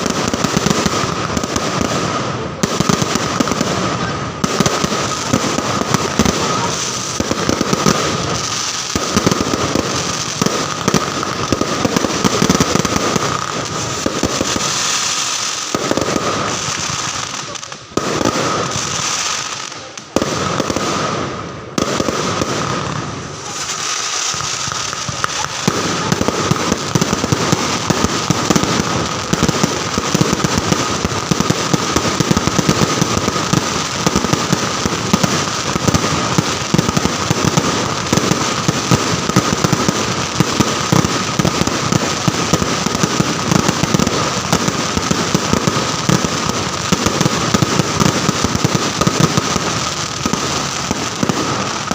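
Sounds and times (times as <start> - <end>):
fireworks bursts: 0.0 - 51.9
rapid barrage of firework bangs: 0.0 - 51.9.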